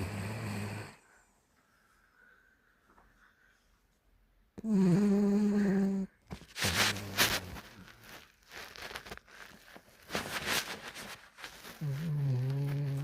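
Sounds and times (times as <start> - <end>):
dog snoring: 0.0 - 1.1, 4.6 - 7.6, 11.8 - 13.0.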